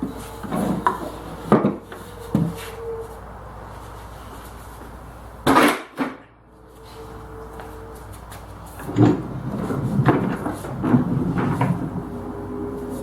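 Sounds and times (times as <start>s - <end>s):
wooden knocks and clunks: 0.0s - 2.6s, 8.8s - 12.1s.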